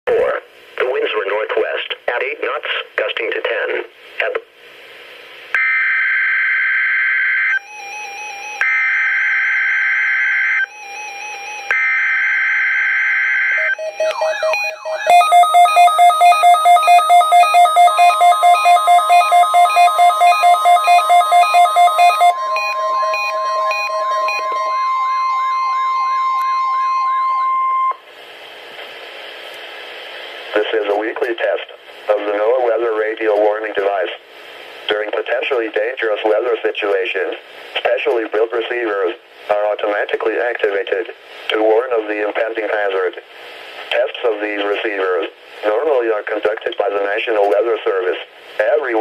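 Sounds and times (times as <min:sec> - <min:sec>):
radio hiss: 0:00.1 - 0:05.5, 0:28.1 - 0:49.0
electronic alarm beeps: 0:12.9 - 0:28.0
buzzy two-tone data warble: 0:13.6 - 0:27.6.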